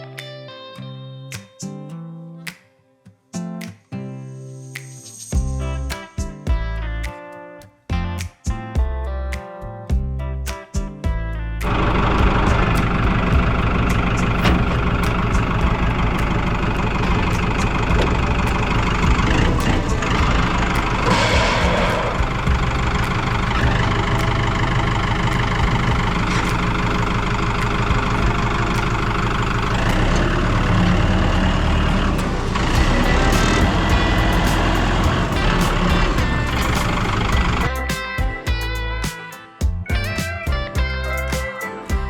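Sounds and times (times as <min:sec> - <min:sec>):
truck engine running: 0:11.7 - 0:37.9.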